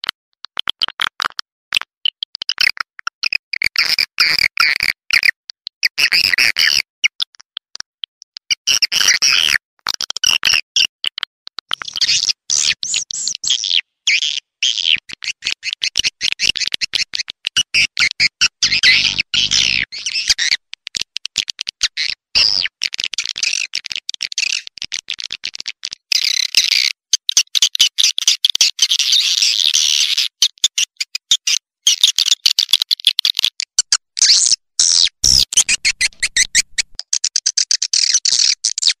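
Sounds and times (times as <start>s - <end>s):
swiftlets chirping and twittering: 34.2s - 37.0s.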